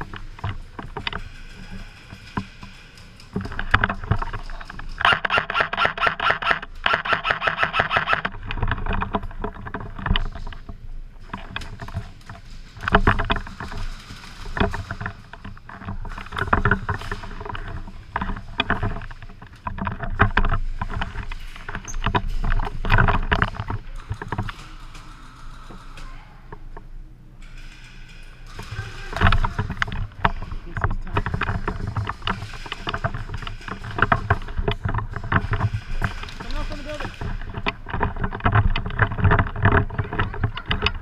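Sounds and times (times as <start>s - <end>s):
rustling: 0.0s - 41.0s
airsoft gun full-auto clicks: 5.0s - 8.3s.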